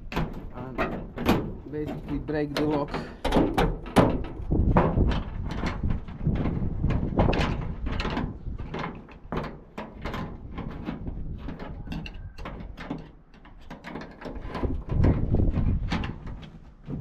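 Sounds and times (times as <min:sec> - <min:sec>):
metallic squeak: 0:11.7 - 0:12.6.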